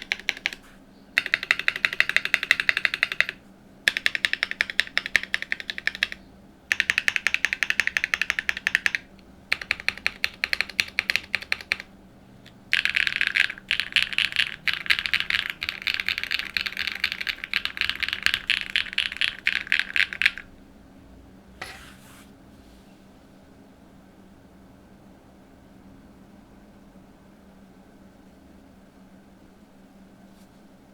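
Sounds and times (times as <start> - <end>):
mechanical keyboard typing: 0.0 - 0.6, 1.2 - 11.9, 12.5 - 20.5.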